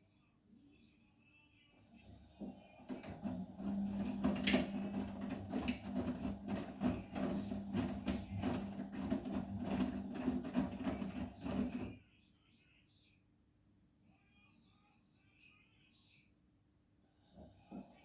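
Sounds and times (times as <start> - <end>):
washing machine motor hum: 1.8 - 12.0
wet laundry tumbling: 2.9 - 11.9.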